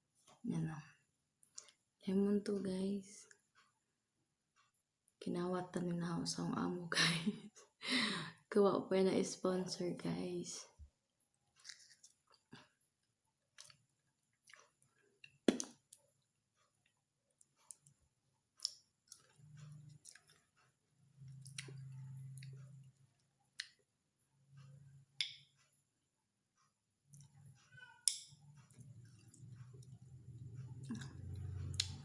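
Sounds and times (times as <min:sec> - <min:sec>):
person chewing: 0:11.6 - 0:12.5, 0:13.5 - 0:16.0, 0:18.5 - 0:20.6, 0:21.2 - 0:22.7, 0:30.8 - 0:32.0.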